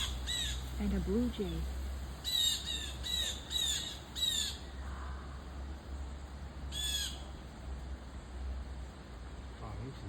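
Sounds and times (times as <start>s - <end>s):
blue jay calling: 0.0s - 7.7s.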